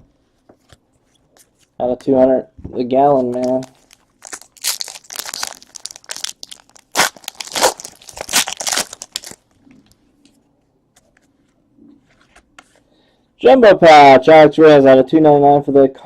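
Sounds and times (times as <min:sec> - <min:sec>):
packaging crinkled and torn: 0:03.3 - 0:09.5.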